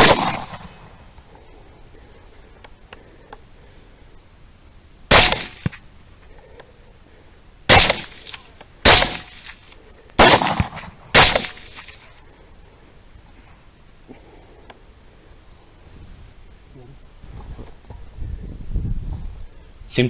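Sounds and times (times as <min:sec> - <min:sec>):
rifle shots with echo: 0:00.0 - 0:00.9, 0:05.1 - 0:05.8, 0:07.7 - 0:09.6, 0:10.2 - 0:12.0.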